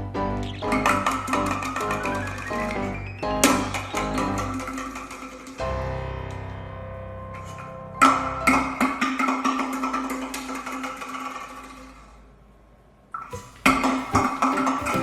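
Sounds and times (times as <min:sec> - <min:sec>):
plucked-string music: 0:13.3 - 0:15.0.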